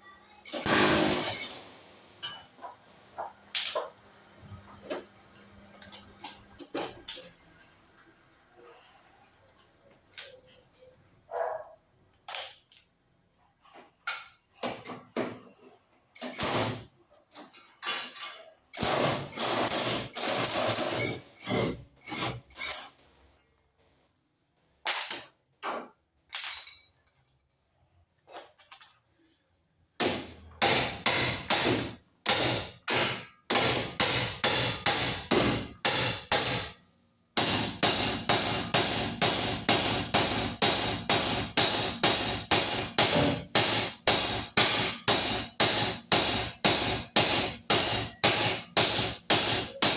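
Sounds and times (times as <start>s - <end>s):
tool clatter: 4.7s - 7.7s, 13.7s - 24.0s, 24.8s - 27.3s, 28.2s - 29.4s.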